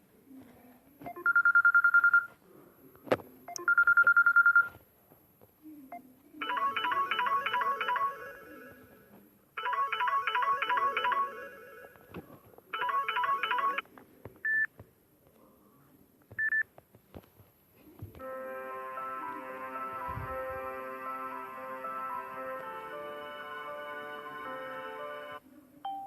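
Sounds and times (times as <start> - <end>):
phone ringtone electronic notes: 6.4 - 8.8, 9.6 - 12.0, 12.8 - 13.8
ringtone with held notes: 6.4 - 8.8, 9.6 - 11.9, 18.2 - 26.0.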